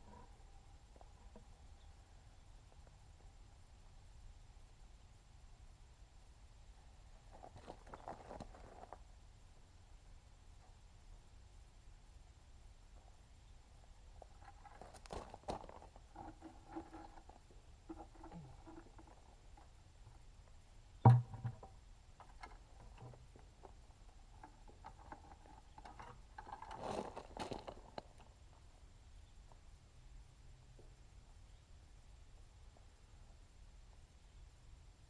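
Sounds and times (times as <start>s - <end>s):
sharp knock: 21.1s - 21.6s.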